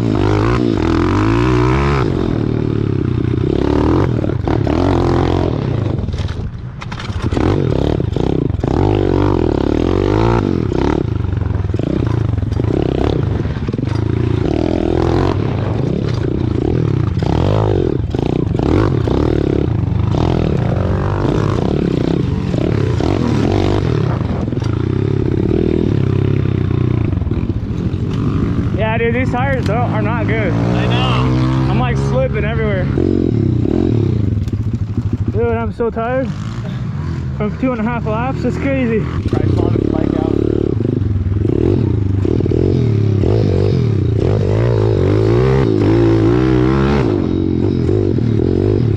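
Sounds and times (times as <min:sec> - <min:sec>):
pit bike engine revving: 0:00.0 - 0:48.9
rough scraping and rattling: 0:03.6 - 0:08.9.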